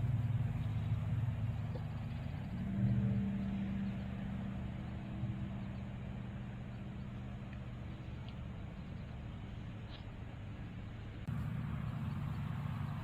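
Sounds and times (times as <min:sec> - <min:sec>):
motor vehicle passing: 0:00.0 - 0:08.2, 0:11.3 - 0:13.0.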